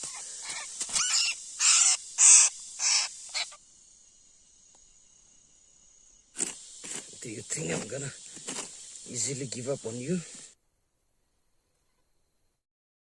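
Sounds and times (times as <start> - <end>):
bird calling: 0.0 - 3.6
faint high hiss: 0.0 - 12.6.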